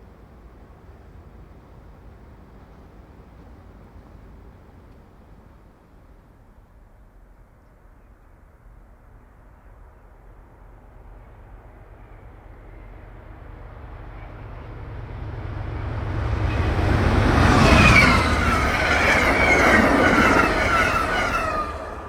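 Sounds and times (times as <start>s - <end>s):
passenger train passing: 0.0s - 7.5s, 8.4s - 22.0s.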